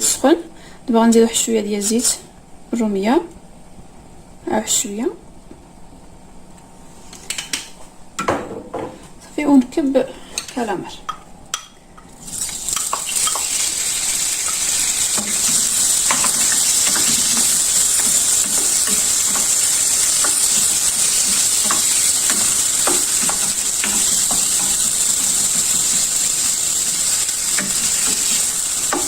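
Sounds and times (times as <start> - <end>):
calamari sizzling in hot oil: 12.2 - 29.0.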